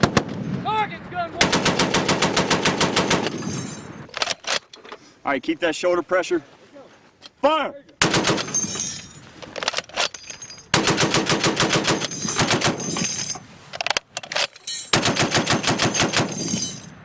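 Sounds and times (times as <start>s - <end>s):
heavy machine gun firing: 1.4s - 3.3s, 10.8s - 12.8s.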